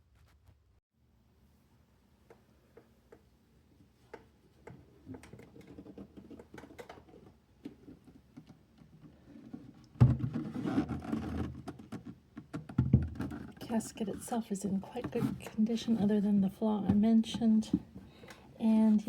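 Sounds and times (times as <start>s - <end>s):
wooden box rubbing and knocking: 9.1s - 18.0s.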